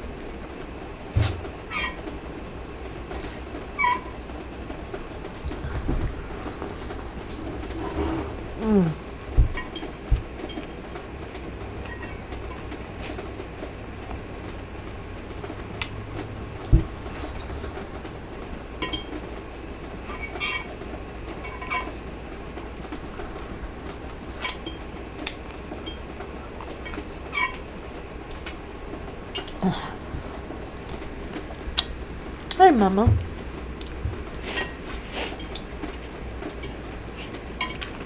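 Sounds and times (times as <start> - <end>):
utensils clinking against dishes: 5.3 - 11.1, 11.8 - 13.4, 18.8 - 19.4, 20.0 - 22.3, 24.2 - 28.5, 33.0 - 38.0
steady low hum: 28.1 - 35.8.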